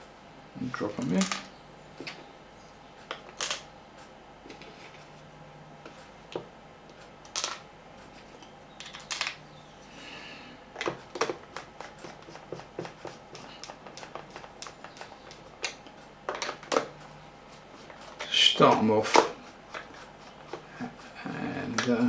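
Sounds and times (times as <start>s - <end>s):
screws clicking and tapping: 10.8s - 17.1s.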